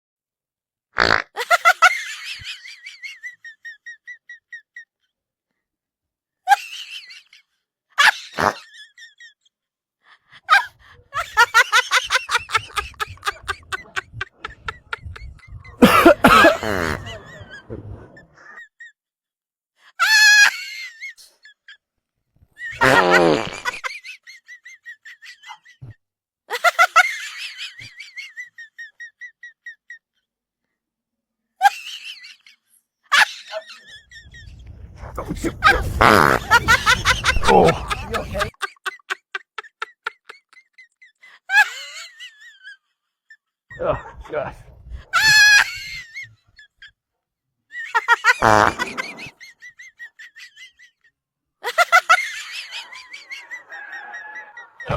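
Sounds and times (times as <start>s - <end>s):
fake fart sound effects: 1.0s - 1.4s, 8.4s - 8.6s, 12.8s - 18.2s, 22.8s - 23.8s, 34.2s - 38.5s, 48.4s - 49.4s.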